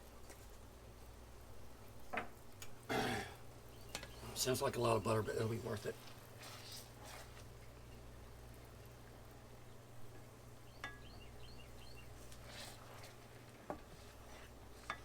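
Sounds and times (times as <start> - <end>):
low electrical hum: 0.0 - 15.0
faint bird chirps: 3.6 - 4.7, 10.6 - 12.3.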